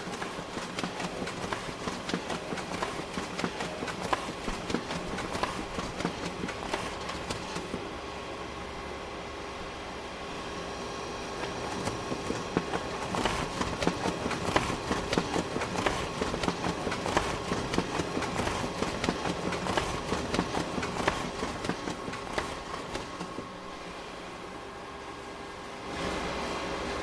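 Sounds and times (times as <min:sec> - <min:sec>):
photocopier humming: 0:00.0 - 0:08.0, 0:10.5 - 0:24.0.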